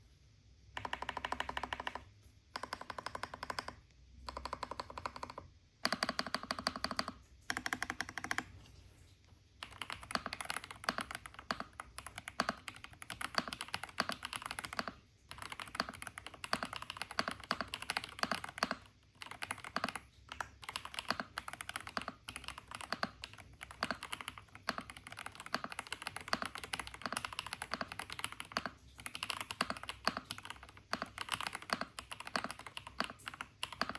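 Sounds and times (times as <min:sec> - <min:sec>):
mechanical keyboard typing: 0:00.7 - 0:08.5, 0:09.6 - 0:33.9.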